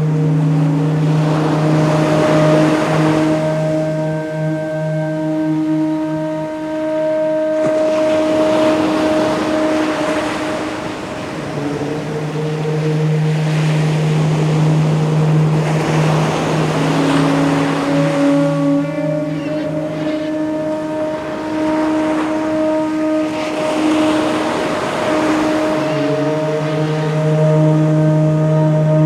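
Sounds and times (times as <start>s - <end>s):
low chanted om: 0.0s - 29.0s
ocean surf washing in: 7.7s - 28.9s.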